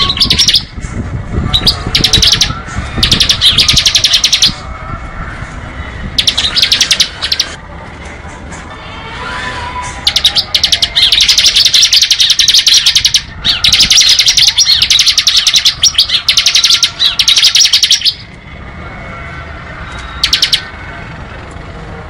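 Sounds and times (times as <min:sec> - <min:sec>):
bird singing rapid rattling trill: 0:00.0 - 0:00.8, 0:01.4 - 0:04.6, 0:06.2 - 0:07.6, 0:10.0 - 0:18.3, 0:20.0 - 0:20.7.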